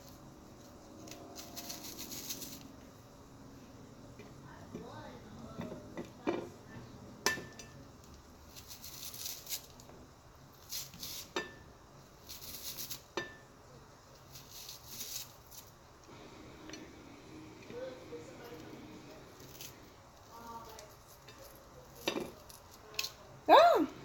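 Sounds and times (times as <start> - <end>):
knife slicing onion: 1.0 - 2.6, 8.4 - 9.8, 10.5 - 11.6, 12.2 - 13.4, 14.2 - 15.8.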